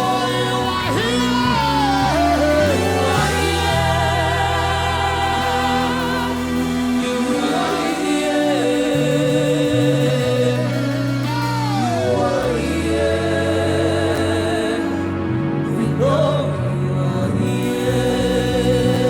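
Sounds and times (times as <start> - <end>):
band holding sustained chords: 0.0 - 19.0
voices singing with vibrato: 0.0 - 19.0.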